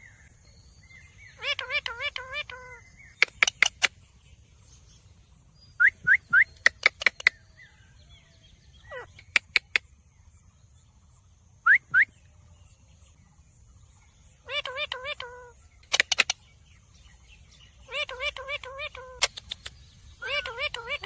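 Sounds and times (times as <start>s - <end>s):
parrot chirping: 1.3s - 4.0s, 5.8s - 7.4s, 8.8s - 9.8s, 14.4s - 16.6s, 17.7s - 21.0s
sharp clicks: 3.2s - 3.9s, 19.2s - 19.8s.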